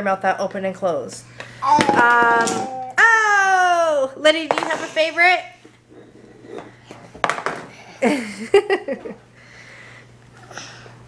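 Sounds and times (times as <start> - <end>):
objects knocking when handled: 1.7 - 2.7, 6.0 - 7.8.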